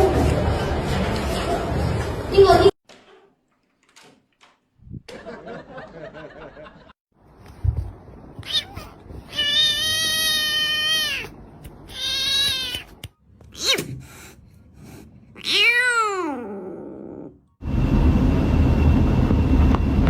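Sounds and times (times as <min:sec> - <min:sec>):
cat meowing: 0:08.4 - 0:13.0, 0:15.4 - 0:17.3.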